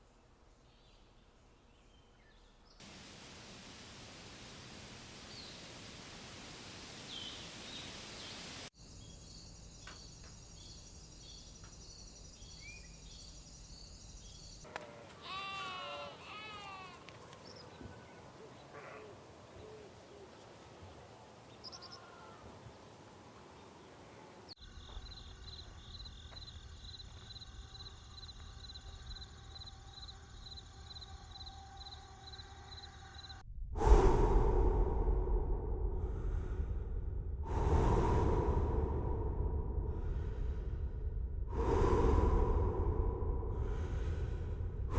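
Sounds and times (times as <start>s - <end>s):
birdsong chirps: 0.0s - 2.8s, 5.2s - 6.0s, 6.8s - 15.3s, 17.2s - 33.4s
soft hiss: 2.6s - 8.7s
crickets chirping: 2.8s - 14.7s, 24.6s - 33.4s
high insect chirp: 6.9s - 14.7s, 24.6s - 33.4s
farm animal call: 15.1s - 17.0s.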